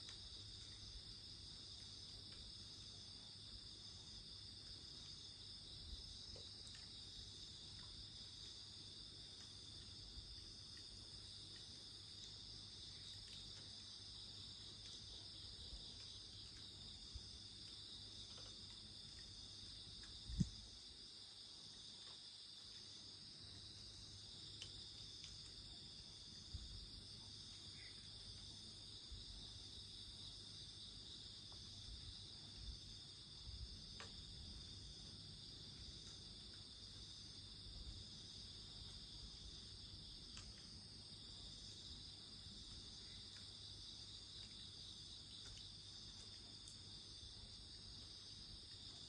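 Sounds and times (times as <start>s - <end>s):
crickets chirring: 0.0s - 49.0s.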